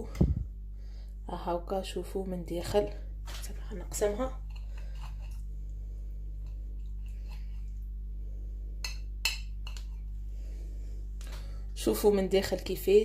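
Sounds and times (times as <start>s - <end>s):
low electrical hum: 0.0s - 13.0s
knife scraping: 4.5s - 5.5s.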